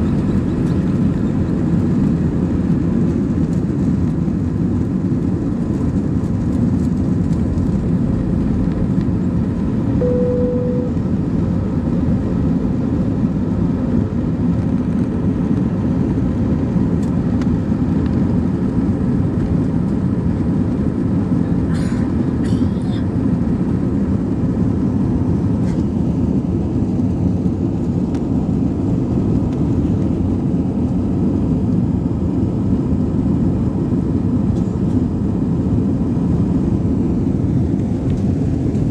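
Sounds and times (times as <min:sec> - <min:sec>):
airplane engines roaring in cabin: 0:00.0 - 0:38.9
short steady tone: 0:10.0 - 0:11.2.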